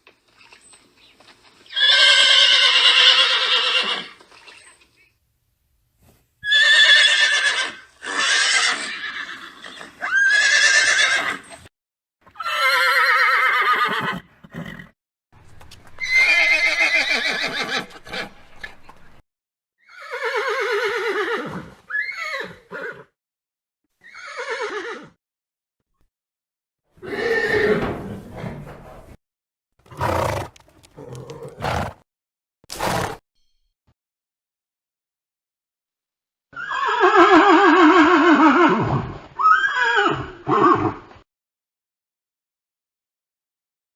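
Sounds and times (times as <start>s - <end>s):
horses neighing: 12.4s - 14.9s, 15.9s - 19.0s, 24.1s - 25.1s, 27.0s - 29.2s, 29.9s - 32.0s.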